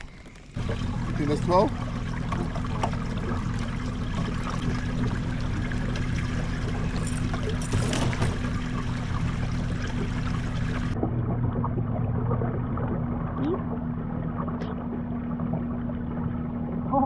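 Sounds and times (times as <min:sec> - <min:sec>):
steady low hum: 0:00.0 - 0:17.0
water trickling and splashing: 0:00.0 - 0:17.0.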